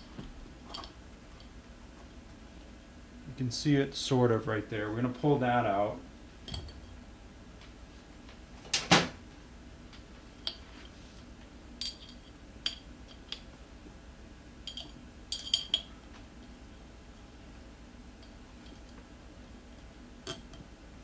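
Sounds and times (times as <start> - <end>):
light metallic clinks and taps: 11.8 - 13.5, 14.7 - 15.9.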